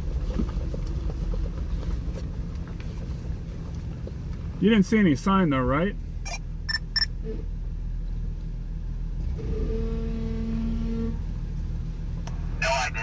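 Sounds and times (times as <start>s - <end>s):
engine rumbling low: 0.0s - 13.0s.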